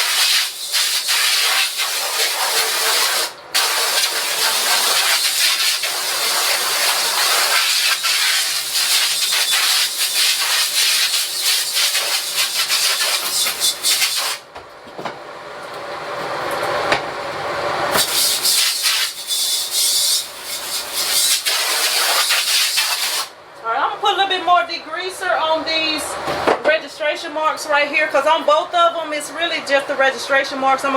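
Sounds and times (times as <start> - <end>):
spray washer hissing: 0.0 - 14.4, 18.0 - 19.2, 21.4 - 23.3.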